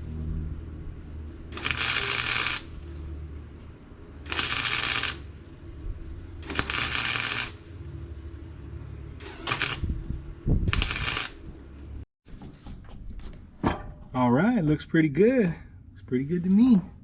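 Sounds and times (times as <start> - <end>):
welder low hum: 0.0 - 12.0
welding arc crackling sizzle: 1.5 - 3.0, 4.2 - 5.5, 6.4 - 8.2, 9.4 - 9.8, 10.7 - 11.5.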